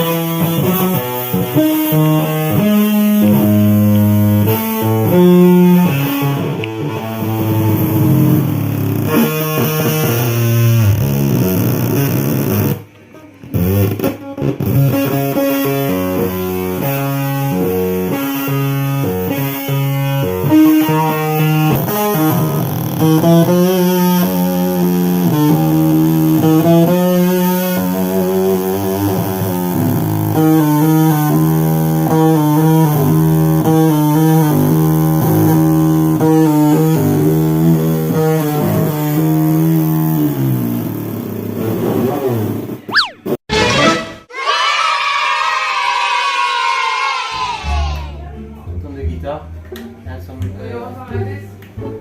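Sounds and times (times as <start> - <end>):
distorted amplified instrument run: 0.0 - 12.9, 13.5 - 42.0.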